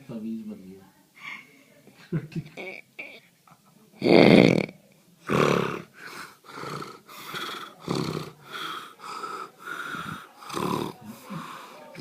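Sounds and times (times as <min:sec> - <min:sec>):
man snoring loudly: 0:06.5 - 0:08.4, 0:10.4 - 0:11.0.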